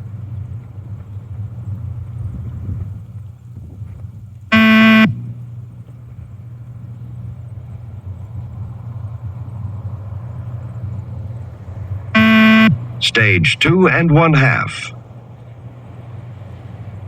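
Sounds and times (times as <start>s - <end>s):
steady low hum: 0.0s - 17.0s
buzzy electronic beep: 4.5s - 5.2s, 12.2s - 14.5s.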